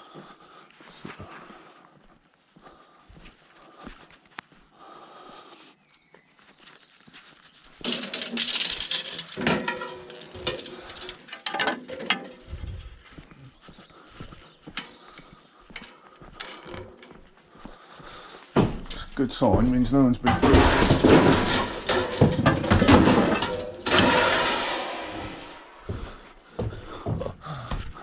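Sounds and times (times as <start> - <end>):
scrap metal clattering: 7.8 - 13.0, 18.6 - 26.2.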